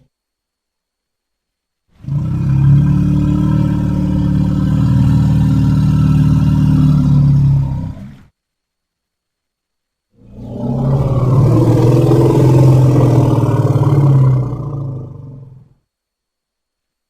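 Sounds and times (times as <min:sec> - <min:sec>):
elephant low rumble: 0:02.0 - 0:08.3, 0:10.2 - 0:15.8.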